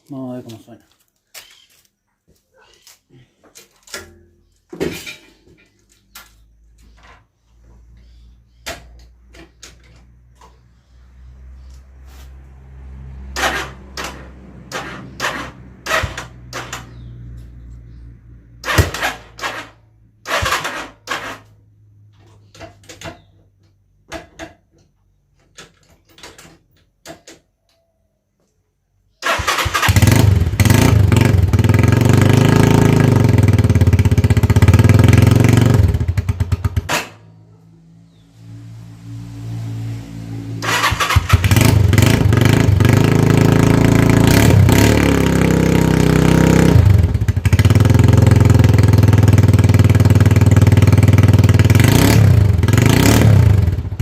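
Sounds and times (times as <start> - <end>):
motorcycle engine running: 29.8 - 54.0.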